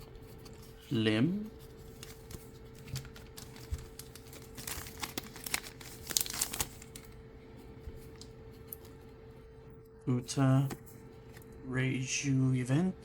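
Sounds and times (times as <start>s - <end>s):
foil pack crinkling: 1.2s - 7.2s.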